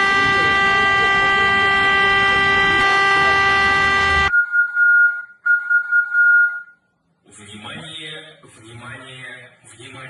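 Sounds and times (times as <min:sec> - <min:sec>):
warning siren steady tone: 0:00.0 - 0:06.6
thin high siren tone: 0:00.0 - 0:06.8.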